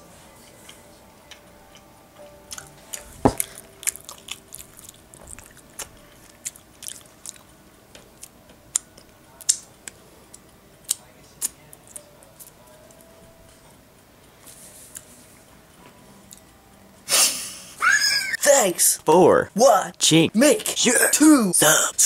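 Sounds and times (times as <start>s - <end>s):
chewing crunchy food: 2.5s - 7.6s.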